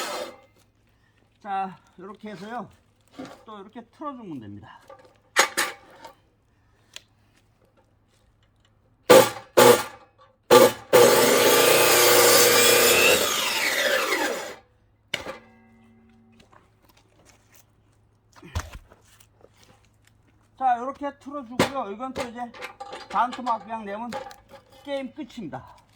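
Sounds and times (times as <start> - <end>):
power saw cutting log: 0.0 - 0.5, 5.4 - 5.8, 9.1 - 14.6.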